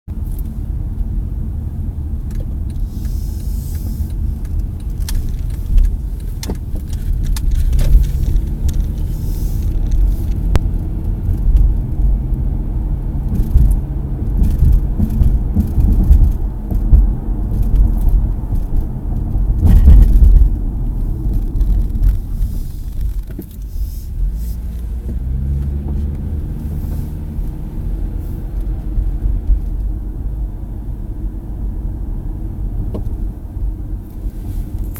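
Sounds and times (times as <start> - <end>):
road and engine rumble: 0.0 - 34.9
light clicks and rattles: 2.2 - 12.1, 13.3 - 20.6.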